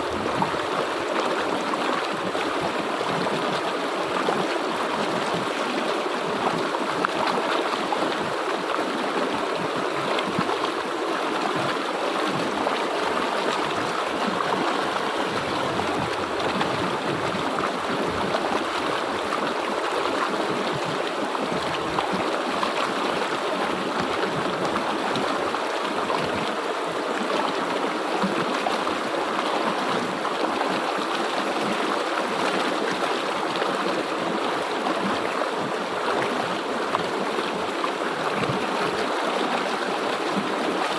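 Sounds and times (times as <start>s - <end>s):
water rushing over rocks: 0.0s - 40.9s.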